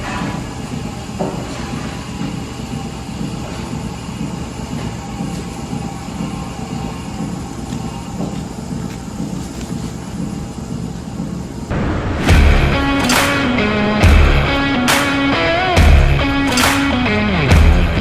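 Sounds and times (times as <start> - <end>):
heavy machine rumble: 10.2 - 18.0
low pulse: 11.7 - 18.0.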